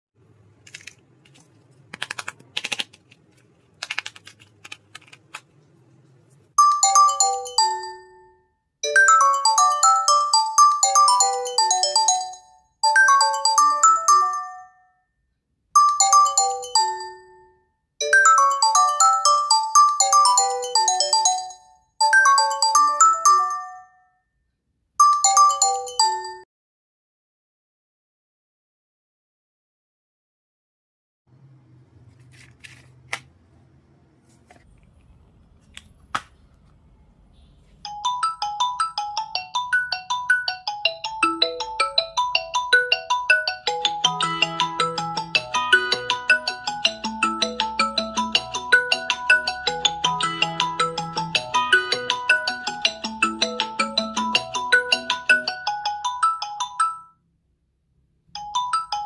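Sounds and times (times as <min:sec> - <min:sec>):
phone ringtone melody: 0:06.6 - 0:14.9, 0:15.8 - 0:24.1, 0:25.0 - 0:26.5, 0:37.9 - 0:57.2, 0:58.4 - 0:59.0.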